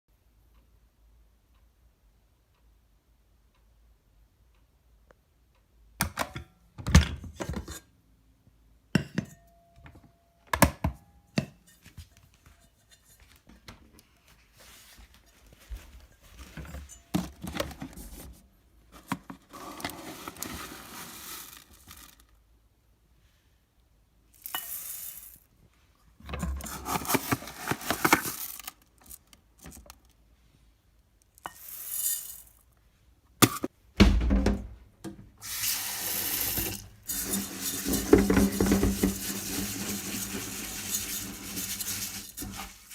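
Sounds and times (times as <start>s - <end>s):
packaging rustling and crinkling: 26.5s - 29.2s
things set down with thunks: 33.4s - 35.2s.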